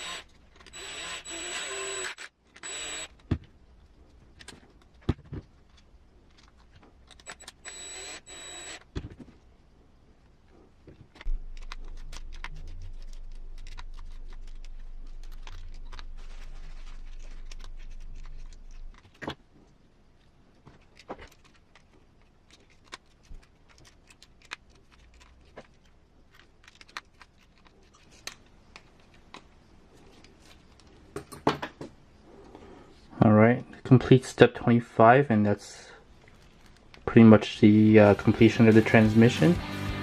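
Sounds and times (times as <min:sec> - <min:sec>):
plastic parts clicking and knocking: 0:02.4 - 0:07.6, 0:17.1 - 0:19.5
steady low hum: 0:02.7 - 0:20.8.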